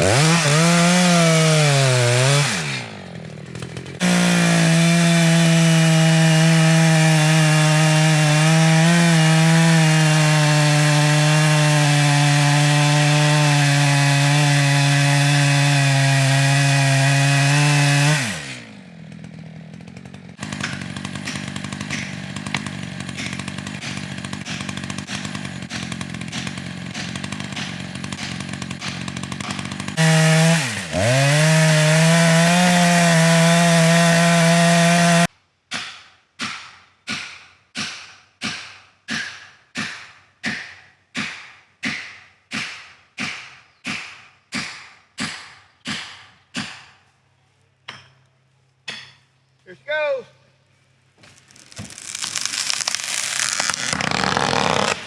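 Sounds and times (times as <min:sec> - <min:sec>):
chainsaw cutting wood: 0:00.0 - 0:35.3, 0:51.2 - 0:55.0.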